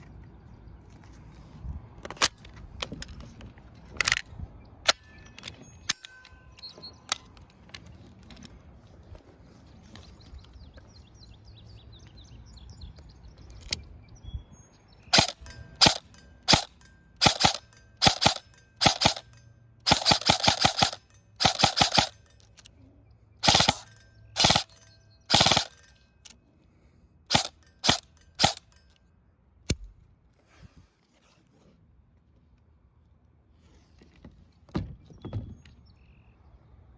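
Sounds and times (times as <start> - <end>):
airsoft rifle firing sharp cracks: 15.2 - 19.3, 19.9 - 22.2, 23.4 - 25.8, 27.3 - 28.7.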